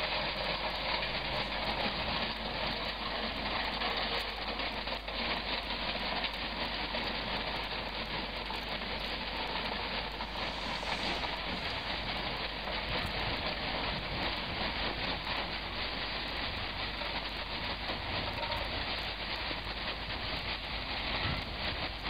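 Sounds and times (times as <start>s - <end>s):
wood pellets pouring: 8.9s - 14.0s.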